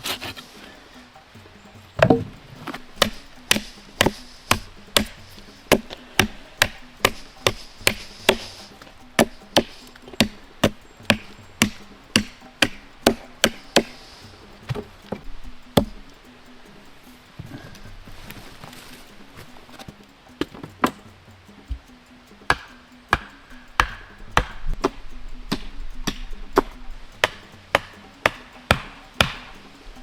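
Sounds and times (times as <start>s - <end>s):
hand tool striking wood: 0.0s - 0.8s, 1.8s - 15.2s, 21.7s - 29.8s.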